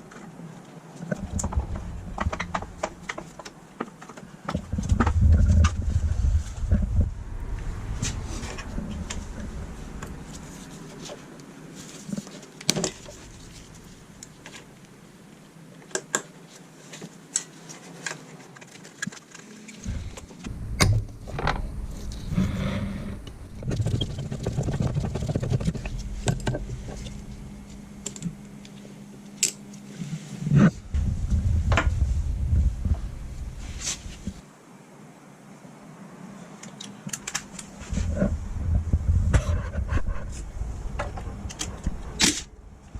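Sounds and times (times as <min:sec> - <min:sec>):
steady low hum: 0:00.0 - 0:03.7, 0:04.6 - 0:15.7, 0:19.8 - 0:34.4, 0:37.2 - 0:42.9
low rumbling handling noise: 0:01.0 - 0:03.7, 0:04.4 - 0:15.0, 0:19.8 - 0:34.4, 0:37.2 - 0:42.9.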